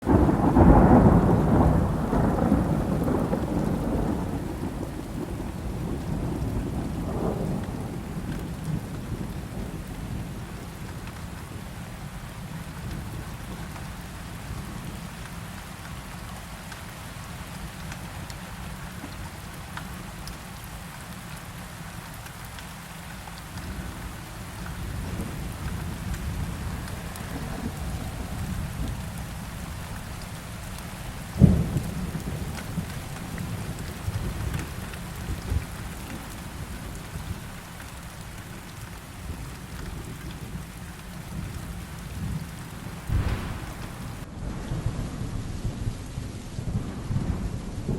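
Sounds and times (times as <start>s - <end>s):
thunder rumbling: 0.0s - 11.8s, 23.6s - 47.9s
steady rain: 0.0s - 47.9s.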